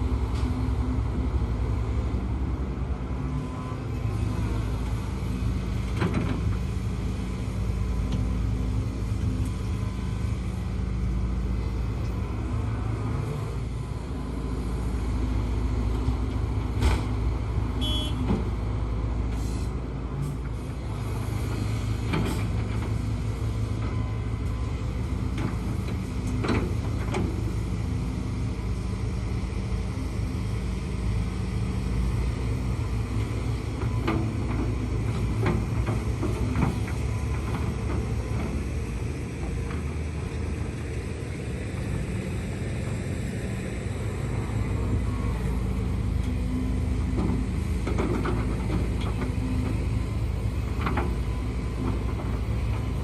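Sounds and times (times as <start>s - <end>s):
excavator diesel engine rumbling: 0.0s - 53.0s.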